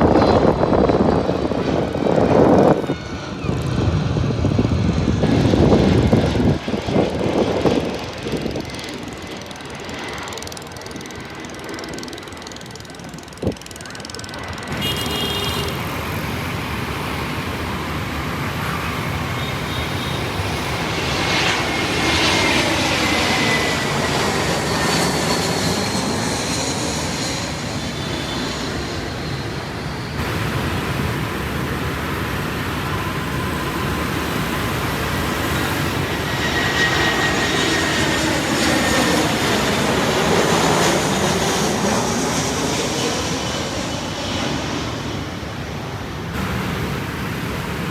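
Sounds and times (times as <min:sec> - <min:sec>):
jet airliners passing: 0:00.0 - 0:47.9.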